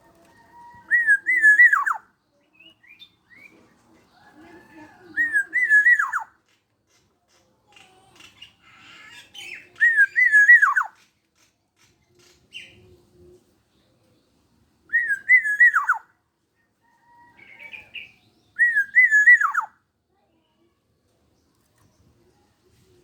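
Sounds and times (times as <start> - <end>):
oriole fluting whistles: 0.6 - 2.0, 14.9 - 16.0, 18.6 - 19.7.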